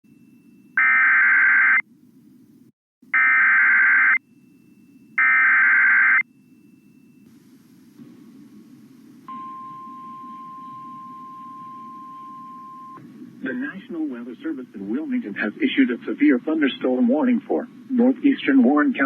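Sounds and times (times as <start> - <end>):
faint low hum: 3.8 - 19.0.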